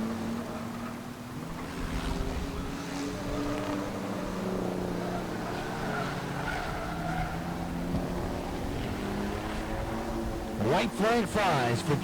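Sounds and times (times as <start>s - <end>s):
race truck engines passing: 0.0s - 12.0s
faint tire squeal: 5.0s - 7.6s.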